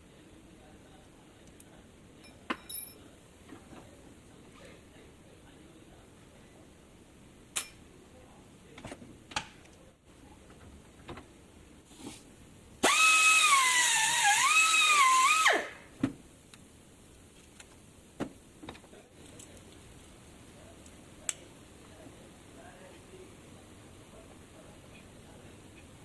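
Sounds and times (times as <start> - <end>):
electric power tool whining: 12.8 - 15.7.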